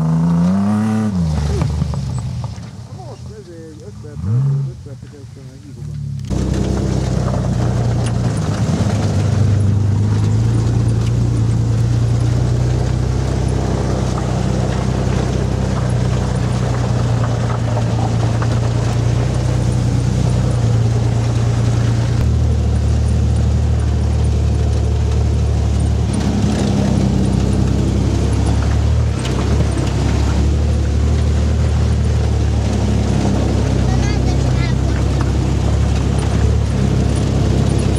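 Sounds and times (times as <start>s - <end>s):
off-road vehicle engine under load: 0.0s - 37.9s.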